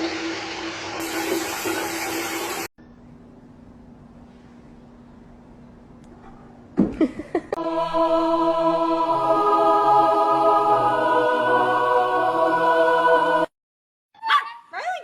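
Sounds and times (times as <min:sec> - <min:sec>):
choir chanting held notes: 0:07.6 - 0:13.5.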